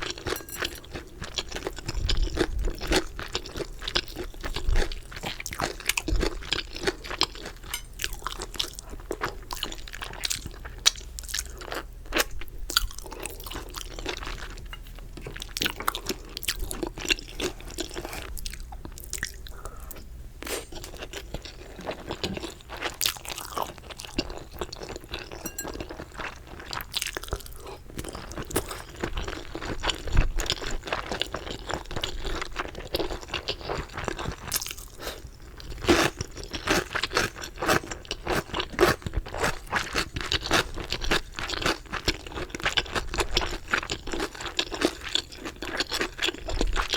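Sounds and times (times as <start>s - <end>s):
crunchy chewing: 0.0s - 46.9s.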